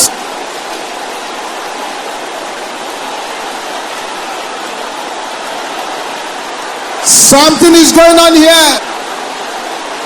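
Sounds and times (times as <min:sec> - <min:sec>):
congregation praying aloud: 0:07.0 - 0:08.9.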